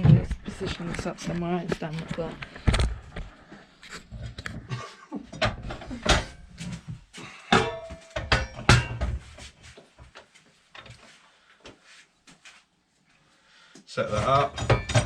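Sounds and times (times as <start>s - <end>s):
steel clanks and knocks: 5.4s - 6.8s, 7.5s - 9.5s, 14.2s - 15.0s.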